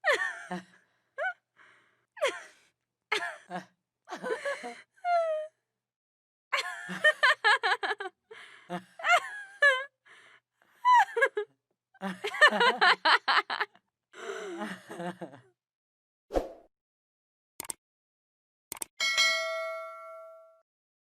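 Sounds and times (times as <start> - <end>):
women laughing: 0.0 - 1.4, 3.1 - 5.5, 6.6 - 9.9, 10.8 - 15.4.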